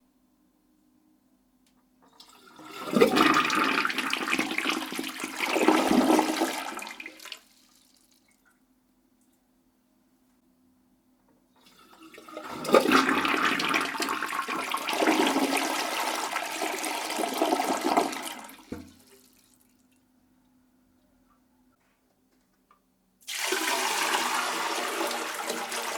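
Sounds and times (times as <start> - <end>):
toilet flushing: 2.1 - 8.4, 11.6 - 19.8, 23.2 - 25.9.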